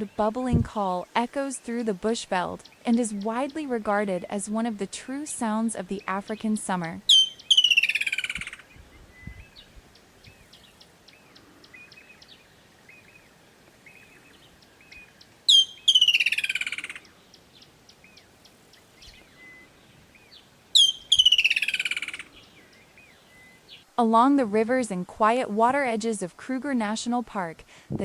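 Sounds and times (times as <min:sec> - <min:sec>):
other birds chirping: 0:00.0 - 0:23.9
kingfisher trilling call: 0:07.1 - 0:08.7, 0:15.5 - 0:17.1, 0:20.8 - 0:22.4.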